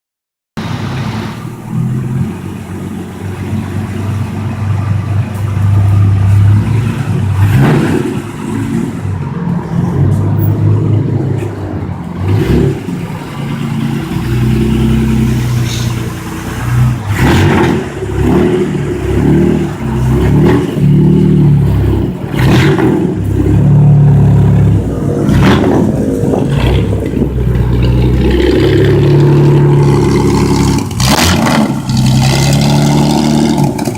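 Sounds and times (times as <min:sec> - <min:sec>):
engine idling and revving: 0:00.6 - 0:33.9.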